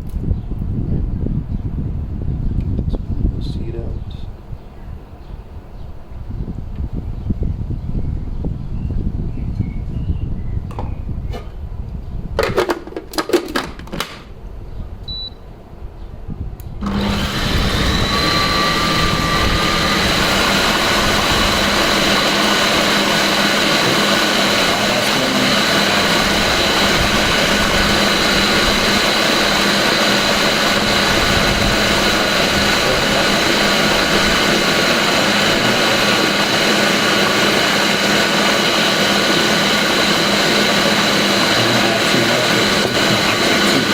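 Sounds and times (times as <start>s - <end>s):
blender motor running: 16.8s - 43.9s.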